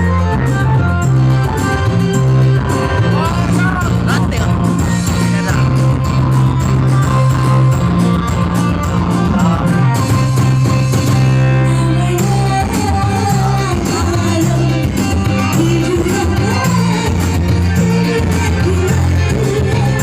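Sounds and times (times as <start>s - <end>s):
keyboard band music: 0.0s - 20.0s
person singing: 8.9s - 10.0s, 11.6s - 20.0s.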